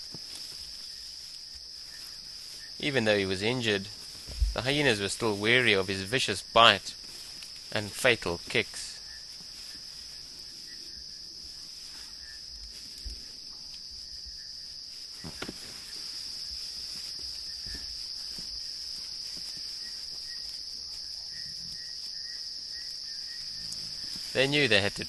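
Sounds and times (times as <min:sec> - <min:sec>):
insects chirring: 0:00.0 - 0:25.0
faint low thuds: 0:03.9 - 0:05.0.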